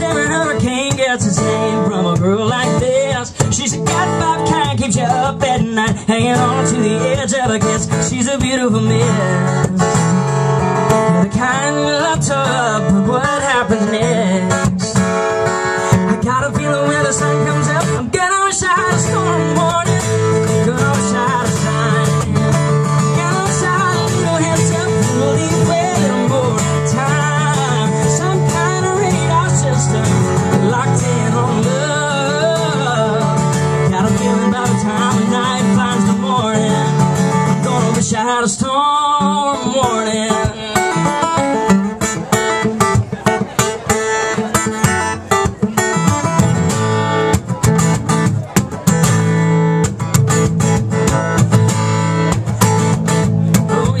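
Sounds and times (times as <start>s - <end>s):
acoustic guitar strumming: 0.0s - 54.0s
man singing country song: 0.0s - 54.0s.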